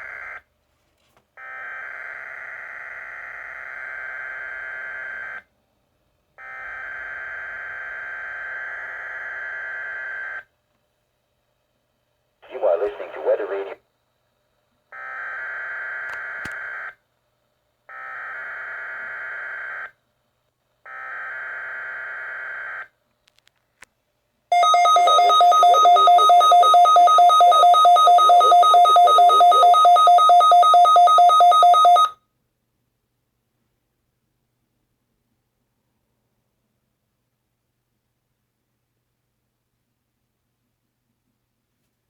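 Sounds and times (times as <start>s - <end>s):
two-tone attention alarm: 24.5s - 32.2s.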